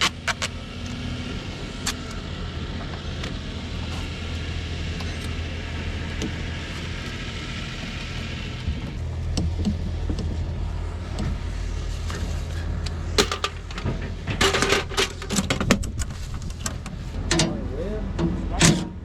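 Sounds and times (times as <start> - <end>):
engine running: 0.0 - 19.0
metallic clicks and clatters: 12.0 - 17.5.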